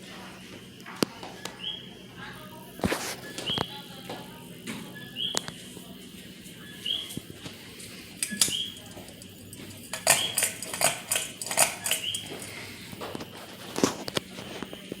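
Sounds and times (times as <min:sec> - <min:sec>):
ceiling fan running: 0:00.0 - 0:15.0.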